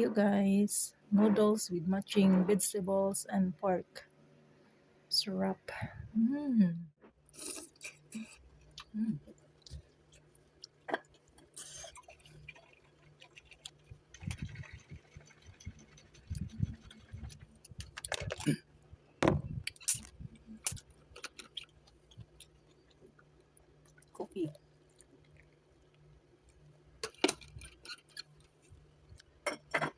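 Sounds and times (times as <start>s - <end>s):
chewing noodles: 7.3s - 18.6s, 19.8s - 26.7s.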